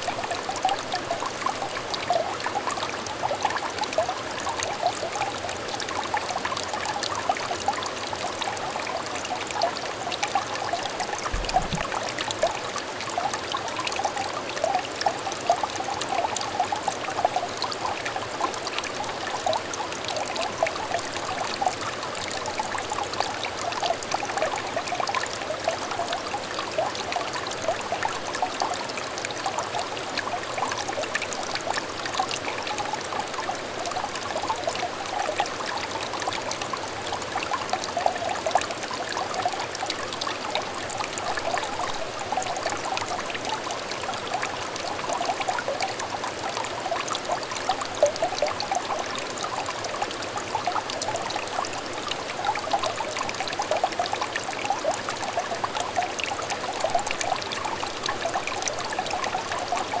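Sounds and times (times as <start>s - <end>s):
stream trickling and babbling: 0.0s - 60.0s.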